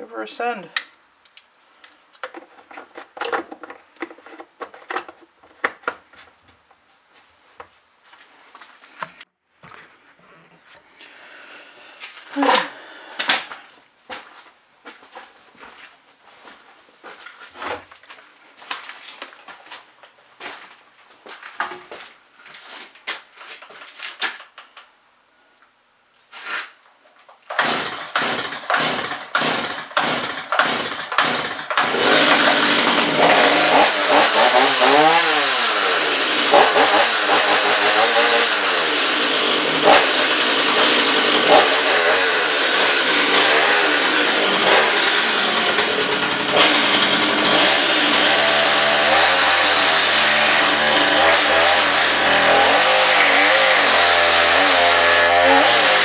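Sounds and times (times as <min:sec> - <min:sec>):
starter cord pulls: 0:27.5 - 0:35.1
chainsaw engine revving: 0:27.5 - 0:56.0.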